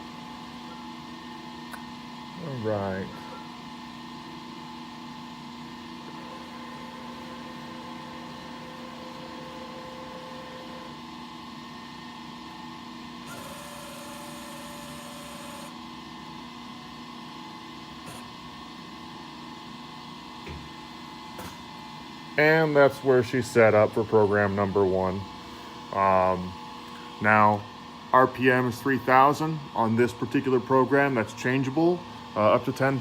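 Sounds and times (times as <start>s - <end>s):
machine electrical hum: 0.0s - 33.0s
axis drives whining: 13.3s - 15.8s.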